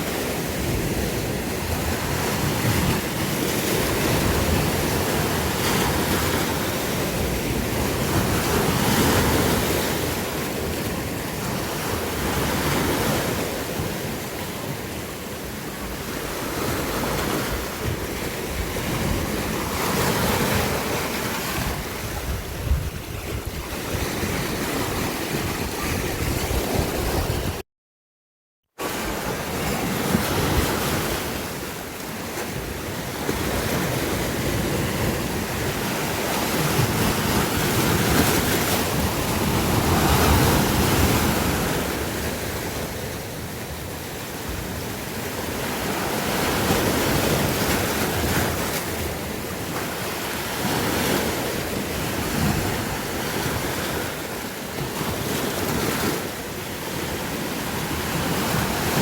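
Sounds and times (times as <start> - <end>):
sea waves washing ashore: 0.0 - 27.6, 28.8 - 59.0
wind buffeting microphone: 17.8 - 27.6.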